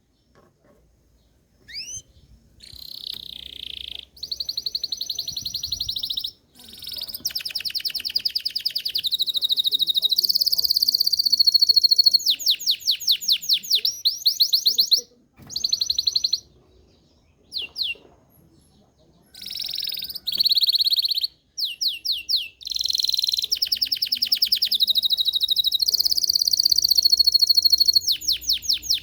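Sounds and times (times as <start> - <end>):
canary singing trills: 1.6 - 29.0.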